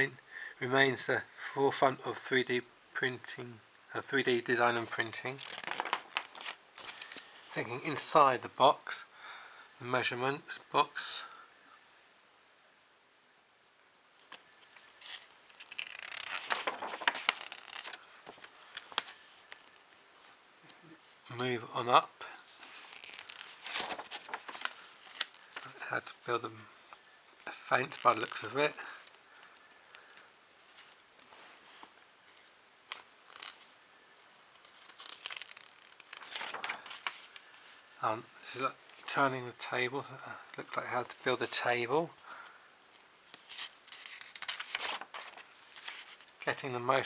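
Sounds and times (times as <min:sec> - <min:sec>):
magazine pages turning: 0:04.8 - 0:08.1, 0:14.2 - 0:20.8, 0:22.4 - 0:33.8, 0:34.5 - 0:39.2, 0:43.0 - 0:46.4
paper rustling with crisp clicks: 0:05.1 - 0:07.4, 0:14.2 - 0:21.5, 0:22.4 - 0:26.3, 0:26.9 - 0:33.8, 0:34.5 - 0:37.8, 0:42.9 - 0:46.4.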